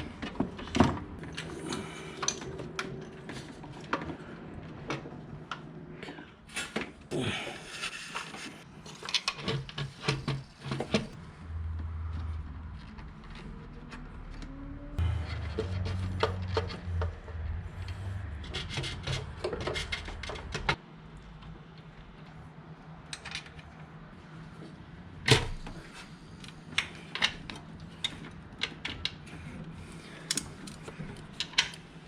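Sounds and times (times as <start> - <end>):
metal parts and tools clinking: 1.2 - 3.6
low hum: 11.2 - 20.7.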